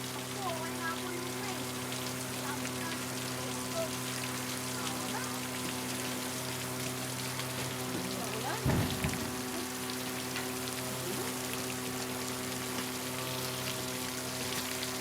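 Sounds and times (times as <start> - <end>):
low electrical hum: 0.0 - 15.0
short low thump: 8.6 - 9.5.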